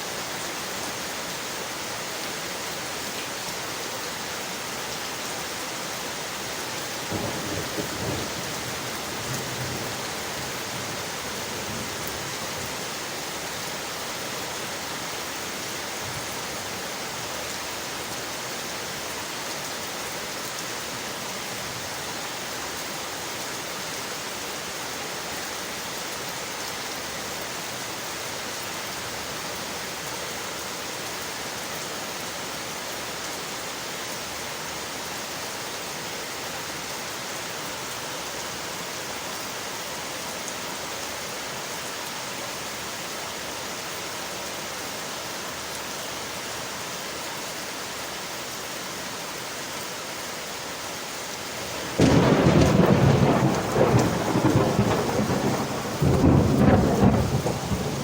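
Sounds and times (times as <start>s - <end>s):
rain hiss: 0.0s - 58.0s
thunderclap rumbling: 51.6s - 58.0s.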